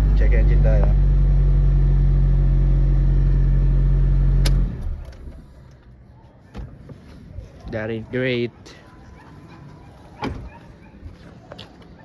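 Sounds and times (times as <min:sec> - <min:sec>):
engine switch-off click: 0:04.4 - 0:05.4.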